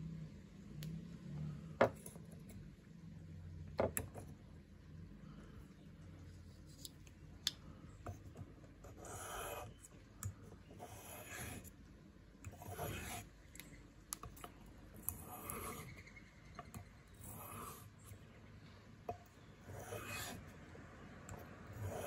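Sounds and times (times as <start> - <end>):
knife blade scraping on abrasive: 10.8 - 11.7, 12.6 - 13.3, 15.0 - 16.0, 17.2 - 17.9, 19.6 - 20.4.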